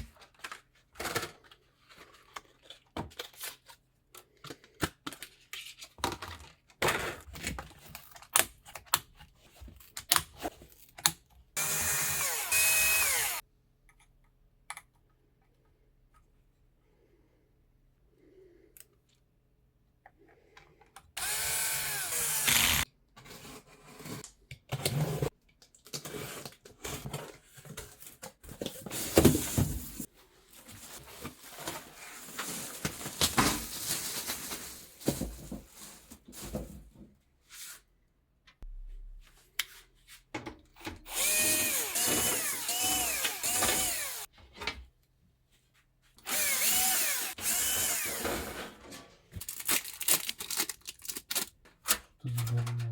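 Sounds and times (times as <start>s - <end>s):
electric screwdriver running: 11.6s - 13.4s, 21.2s - 22.8s, 41.0s - 44.3s, 46.2s - 48.4s.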